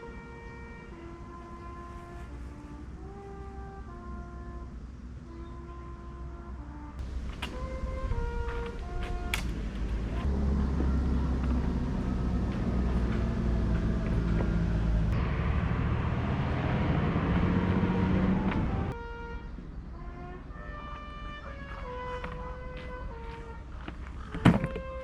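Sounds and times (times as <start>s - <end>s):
vehicle engine and road rumble: 0.0s - 25.0s.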